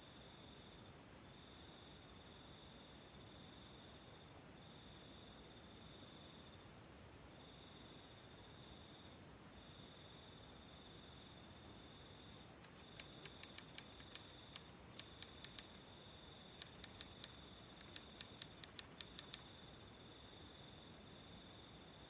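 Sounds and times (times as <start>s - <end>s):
faint high-pitched whine: 0.0s - 22.0s
sharp light clicks: 12.6s - 15.9s, 16.5s - 19.5s.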